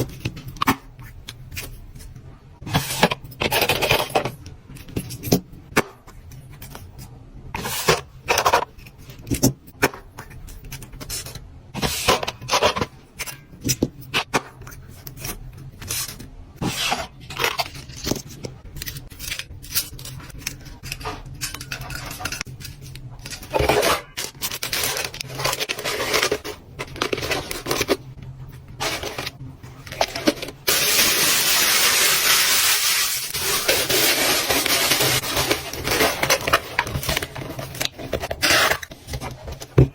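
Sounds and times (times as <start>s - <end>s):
scratching: 19.0s - 39.9s.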